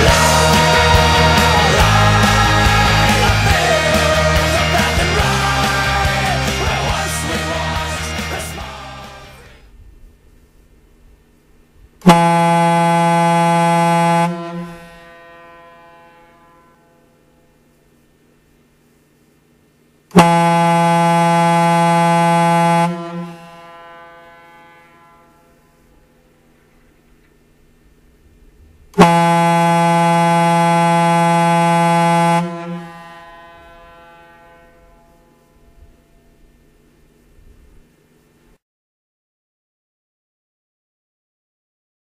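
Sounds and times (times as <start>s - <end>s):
horn echo: 0.0s - 9.7s, 12.0s - 18.4s, 20.1s - 37.2s
low ship horn blast: 0.0s - 10.4s, 12.0s - 19.0s, 20.1s - 38.0s.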